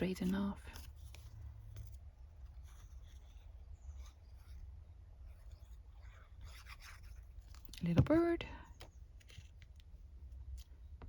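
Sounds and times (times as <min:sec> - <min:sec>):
paper rustling and scraping: 0:00.0 - 0:08.1.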